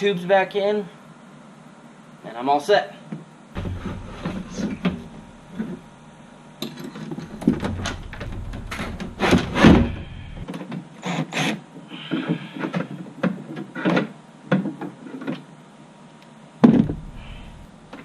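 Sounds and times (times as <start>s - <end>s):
rod tubes scraping and knocking: 3.6s - 5.8s.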